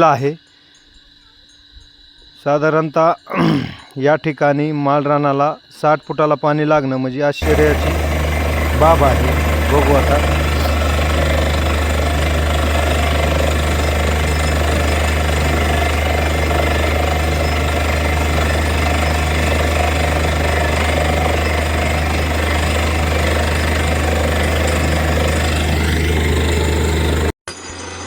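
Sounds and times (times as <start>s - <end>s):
rapid drill hammering: 7.4s - 27.3s
drilling rig engine hum: 7.4s - 27.4s.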